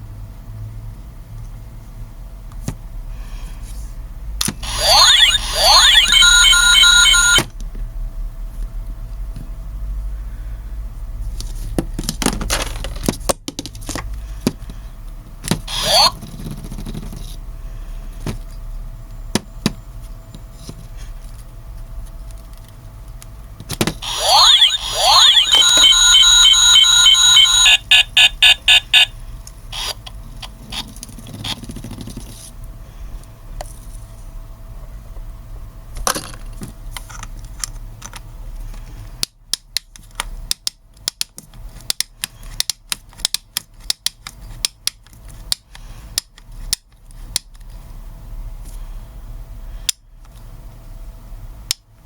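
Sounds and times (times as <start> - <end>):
pulsing alarm-like beeping: 4.6 - 7.4, 15.7 - 16.1, 24.0 - 29.1
short electronic blips: 4.6 - 7.4, 15.7 - 16.1, 24.0 - 29.1.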